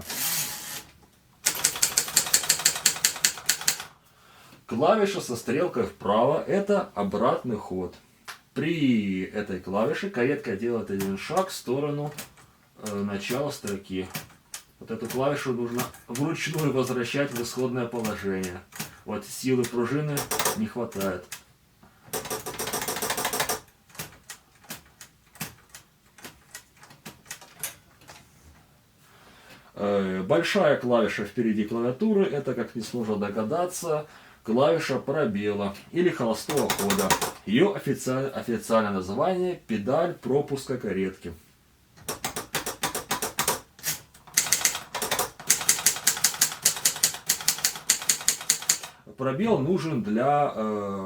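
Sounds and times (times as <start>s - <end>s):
typewriter carriage clicking: 0.0s - 4.0s, 11.0s - 19.0s, 19.6s - 21.4s, 22.1s - 28.2s, 36.5s - 37.4s, 42.0s - 49.0s.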